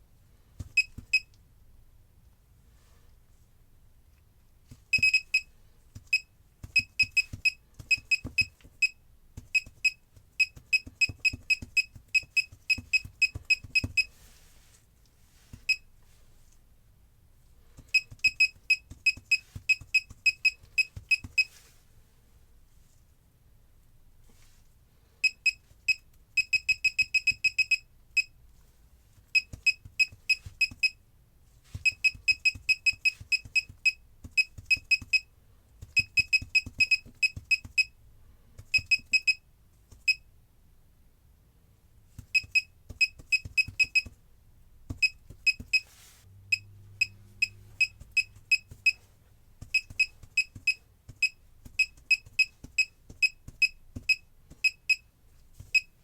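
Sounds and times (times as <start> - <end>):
keyboard click-beeps: 0.7 - 1.4, 4.9 - 14.1, 17.8 - 21.6, 25.2 - 28.3, 29.3 - 31.0, 31.8 - 37.9, 38.6 - 40.2, 42.2 - 44.2, 44.9 - 45.9, 46.5 - 55.1.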